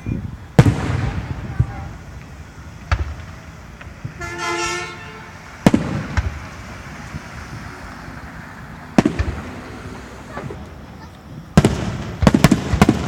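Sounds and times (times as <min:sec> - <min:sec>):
fireworks booming: 0:00.0 - 0:13.0
fireworks crackling: 0:00.0 - 0:13.0
steady horn-like tone: 0:04.2 - 0:05.4.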